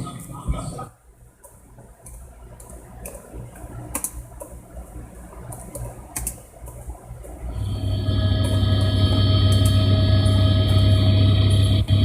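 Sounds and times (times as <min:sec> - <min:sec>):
steady low hum: 0:00.0 - 0:12.0
sharp clicks: 0:05.5 - 0:06.8.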